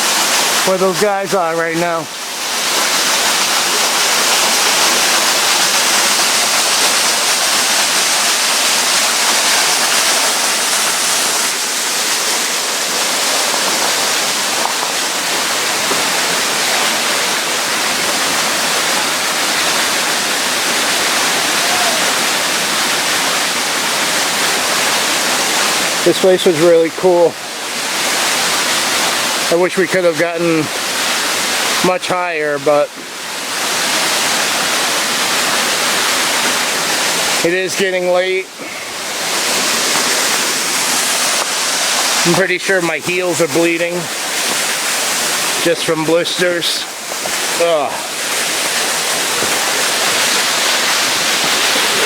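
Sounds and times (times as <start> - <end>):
waterfall rushing: 0.0 - 52.0.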